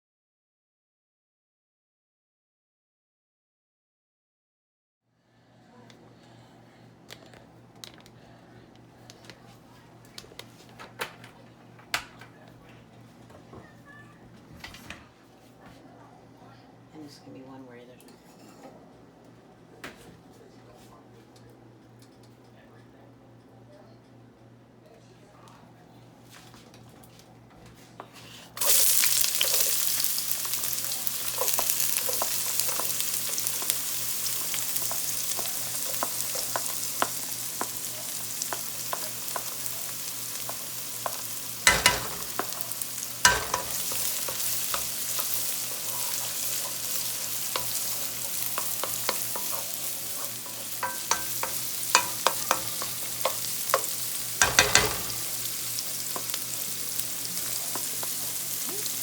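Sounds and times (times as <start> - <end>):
food sizzling in frying pan: 28.5 - 59.0
utensil stirring with clicks: 28.6 - 59.0
utensil knocking against pan: 41.7 - 42.6, 50.4 - 55.3.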